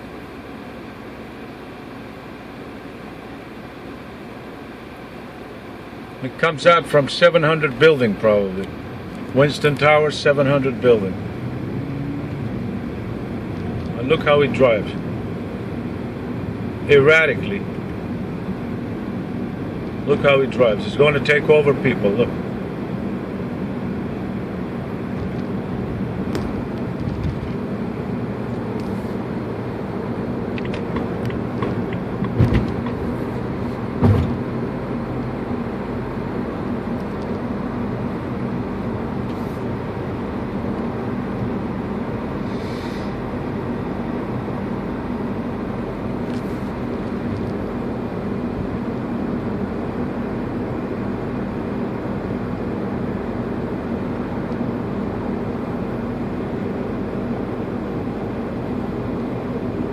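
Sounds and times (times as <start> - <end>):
car engine hum: 0.0 - 59.9
road noise: 0.0 - 59.9
short thumps: 30.7 - 33.0, 34.0 - 34.4.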